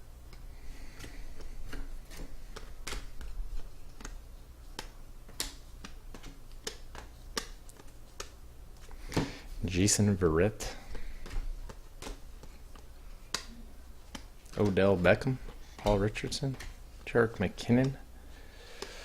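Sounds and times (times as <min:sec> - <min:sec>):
steady low hum: 0:00.0 - 0:19.0
trading cards flicking: 0:01.0 - 0:09.1.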